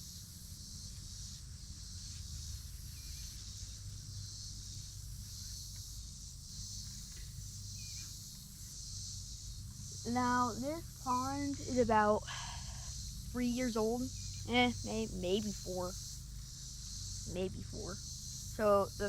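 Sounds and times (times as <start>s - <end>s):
high-pitched insect chorus: 0.0s - 19.0s.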